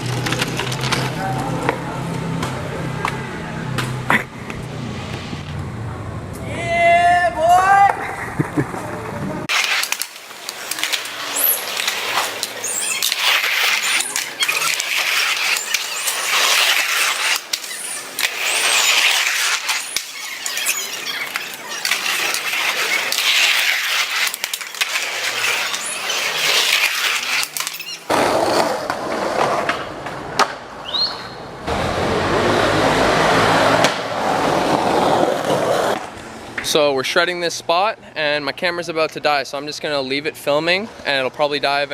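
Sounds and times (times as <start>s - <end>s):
skateboard clacks and pops: 0.0s - 1.8s, 9.5s - 30.7s
skateboard wheels rolling: 0.0s - 5.8s, 8.7s - 36.6s
short high squeals: 9.5s - 28.2s.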